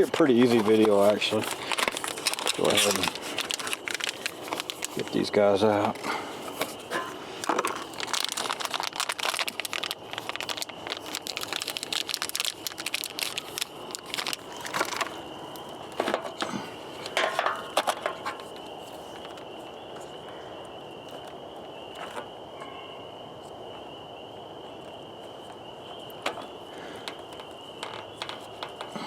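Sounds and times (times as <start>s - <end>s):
plastic clicks rattles and scrapes: 0.0s - 5.0s.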